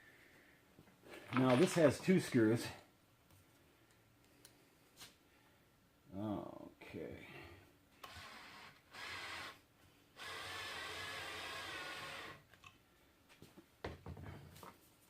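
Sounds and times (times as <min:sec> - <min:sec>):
power drill driving screw: 0:08.0 - 0:09.6, 0:10.2 - 0:12.4.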